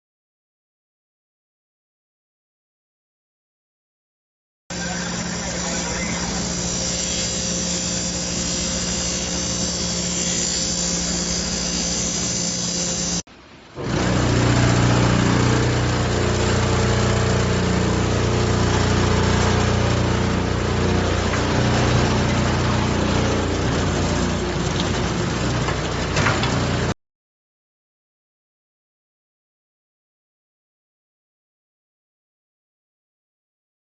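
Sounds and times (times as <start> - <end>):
hissy cutting noise: 4.7 - 13.2
motor hum: 4.7 - 27.0.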